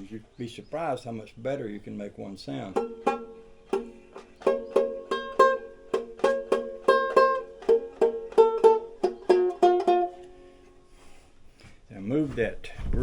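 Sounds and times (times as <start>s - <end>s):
banjo plucked notes: 2.5s - 10.9s.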